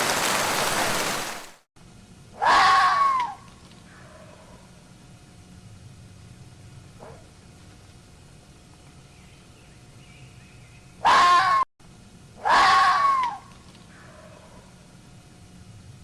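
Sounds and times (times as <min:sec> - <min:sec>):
fox screams: 0:02.4 - 0:03.4, 0:11.0 - 0:11.6, 0:12.4 - 0:13.4.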